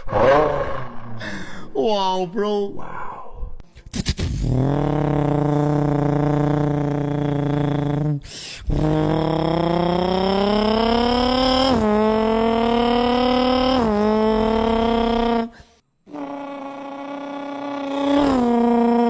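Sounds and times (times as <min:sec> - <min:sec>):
beatboxer imitating car engine: 0:04.0 - 0:19.0.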